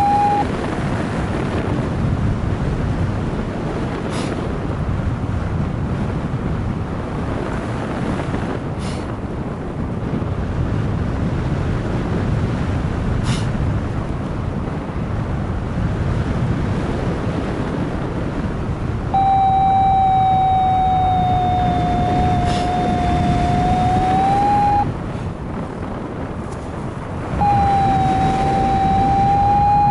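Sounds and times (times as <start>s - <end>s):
variometer electronic tone: 0.0s - 0.5s, 19.1s - 24.9s, 27.4s - 29.9s
wind rushing over microphone: 0.0s - 29.9s.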